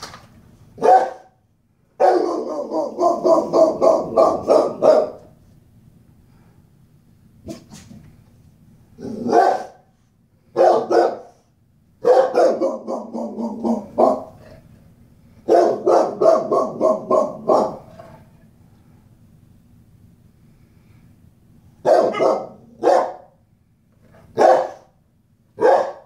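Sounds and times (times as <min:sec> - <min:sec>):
dog barking: 0:00.8 - 0:01.4, 0:02.0 - 0:05.4, 0:09.0 - 0:09.9, 0:10.5 - 0:14.5, 0:15.4 - 0:18.0, 0:21.8 - 0:23.4, 0:24.3 - 0:25.0, 0:25.6 - 0:26.0.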